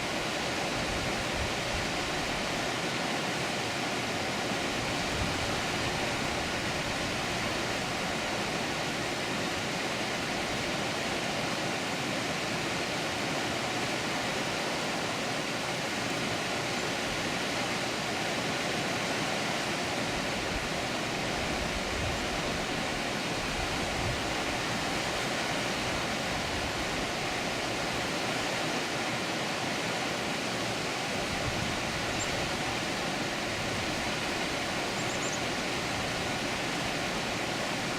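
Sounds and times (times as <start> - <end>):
water rushing over dam spillway: 0.0 - 37.9.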